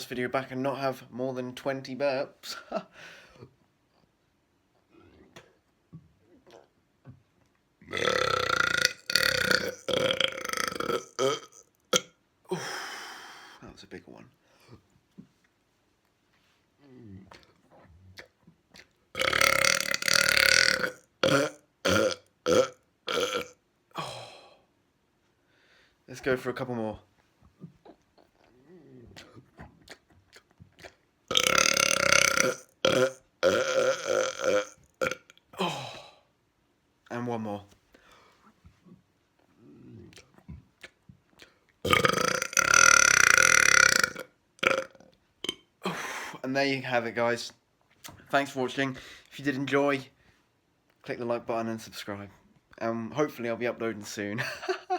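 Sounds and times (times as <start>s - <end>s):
loud belch: 7.9s - 12.1s, 19.2s - 24.2s, 31.3s - 35.9s, 41.8s - 45.7s
person burping: 7.9s - 12.8s, 19.2s - 24.6s, 30.8s - 36.2s, 41.8s - 46.4s.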